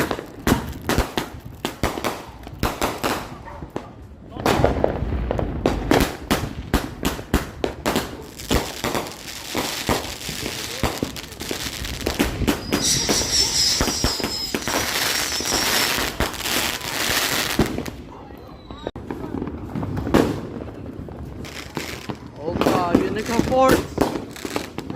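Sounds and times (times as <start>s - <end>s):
fireworks firing sharp shots: 0.0s - 18.1s, 19.0s - 24.9s
high steady whistle: 12.5s - 16.0s.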